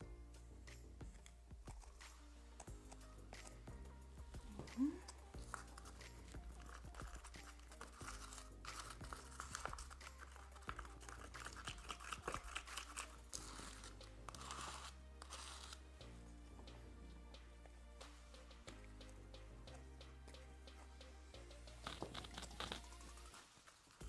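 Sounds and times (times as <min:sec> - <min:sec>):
soft background music: 0:00.0 - 0:24.0
adhesive being stirred in cup: 0:01.0 - 0:15.8.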